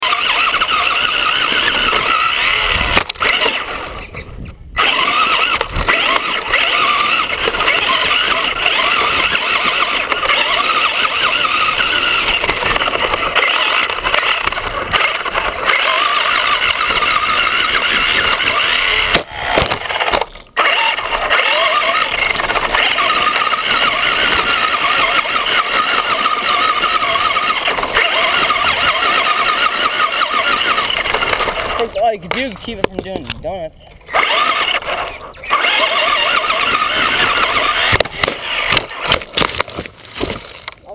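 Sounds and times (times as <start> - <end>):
rc car motor whining: 0.0 - 40.9.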